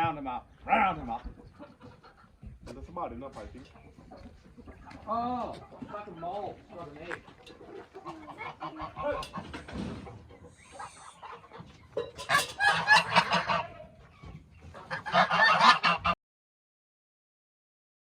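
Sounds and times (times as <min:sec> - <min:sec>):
geese honking: 0:06.8 - 0:16.2.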